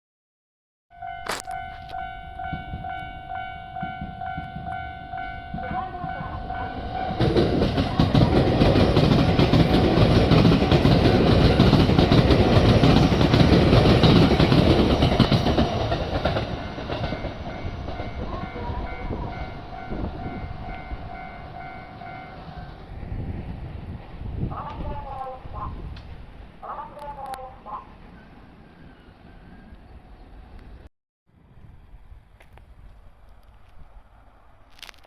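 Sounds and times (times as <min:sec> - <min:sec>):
level crossing alarm ringing: 0:00.9 - 0:07.3
electric train passing: 0:01.0 - 0:35.0
train wheels on rail joints: 0:01.2 - 0:27.4, 0:32.0 - 0:35.0.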